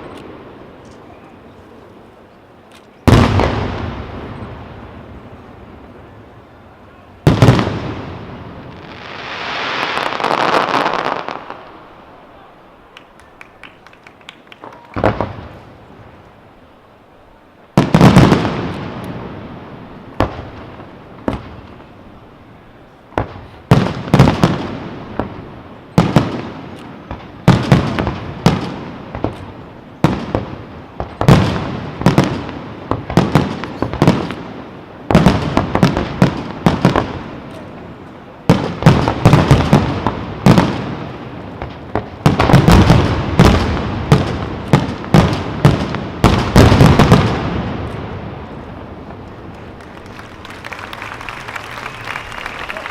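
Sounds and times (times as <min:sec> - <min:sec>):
fireworks booming and crackling: 0:03.0 - 0:16.3, 0:17.7 - 0:52.9.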